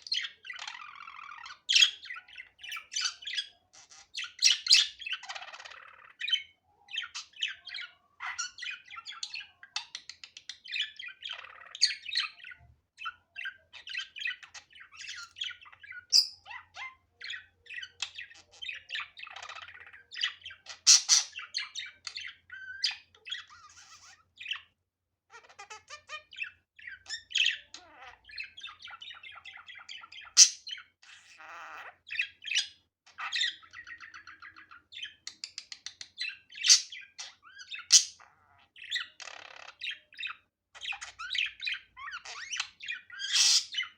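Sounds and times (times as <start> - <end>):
budgerigar chattering: 36.6 - 43.9.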